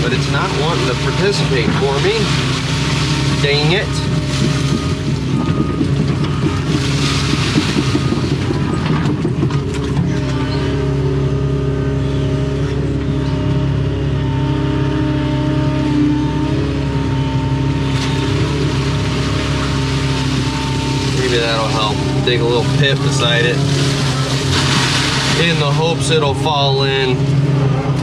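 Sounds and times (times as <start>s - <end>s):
thin steady whine: 0.0s - 9.2s, 10.1s - 28.0s
excavator diesel engine running: 0.0s - 28.0s
bucket knocking and scraping: 0.2s - 10.2s, 19.3s - 26.2s.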